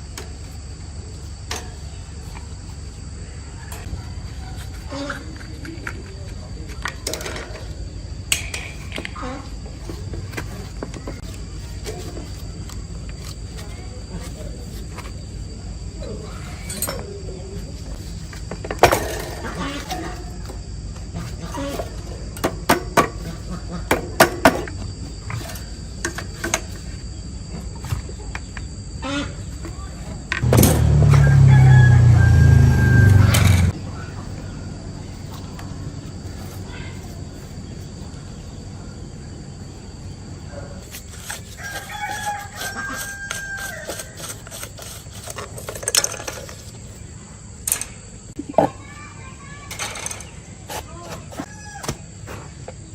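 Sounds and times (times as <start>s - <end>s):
insects chirring: 0.0s - 52.9s
rooster crowing: 30.5s - 33.8s, 41.5s - 44.4s.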